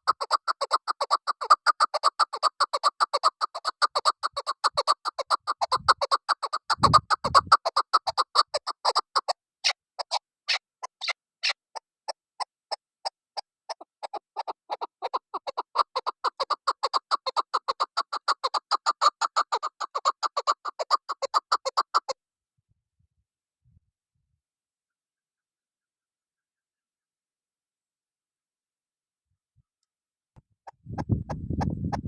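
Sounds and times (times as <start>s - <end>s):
partridge clucking calls: 0.0s - 22.2s.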